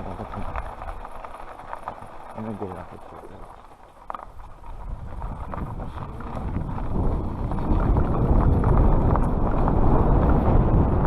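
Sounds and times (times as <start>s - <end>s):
wind rushing over microphone: 4.3s - 11.0s.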